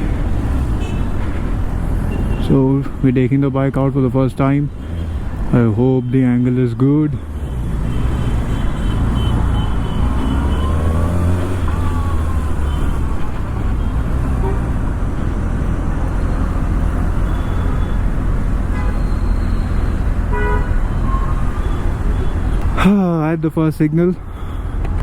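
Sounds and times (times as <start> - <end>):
traffic noise: 0.0 - 25.0
car horn beeps: 2.0 - 2.6, 7.4 - 11.5, 13.7 - 14.8, 16.1 - 22.8
motorcycle engine revving: 7.2 - 22.4.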